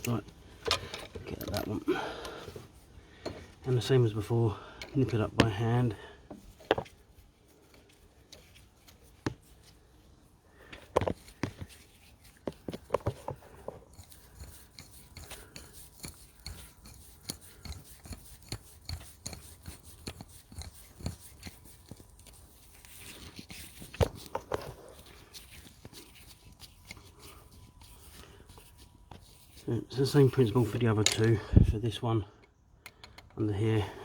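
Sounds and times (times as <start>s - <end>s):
metal bolt clicking and scraping: 0.0s - 2.6s, 4.8s - 5.6s, 30.4s - 31.4s, 32.4s - 33.4s.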